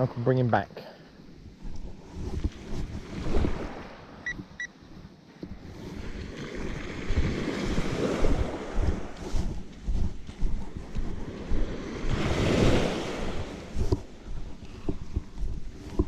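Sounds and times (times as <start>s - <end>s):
wind buffeting microphone: 1.2s - 16.0s
surf breaking on shore: 12.0s - 13.8s.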